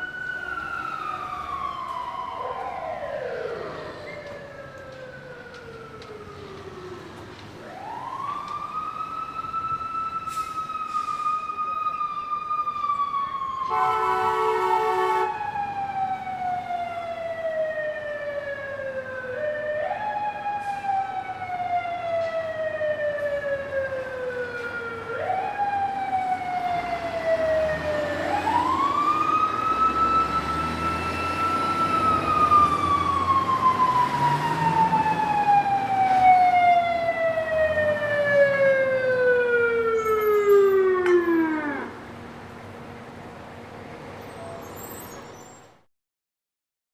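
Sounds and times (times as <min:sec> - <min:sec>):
horn blast: 0:13.7 - 0:15.4
fire truck siren winding: 0:14.9 - 0:42.0.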